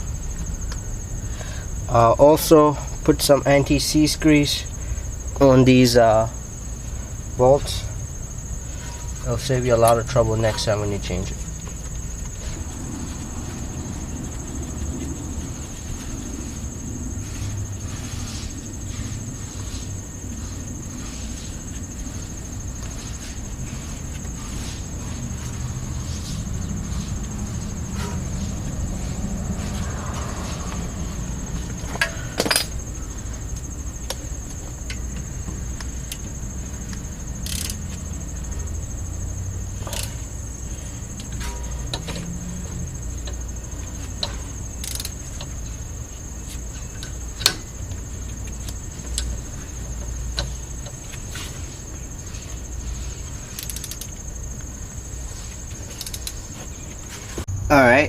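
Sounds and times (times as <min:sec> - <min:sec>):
crickets chirring: 0:00.0 - 0:58.0
sharp clicks of brake work: 0:31.5 - 0:45.9, 0:46.5 - 0:57.5.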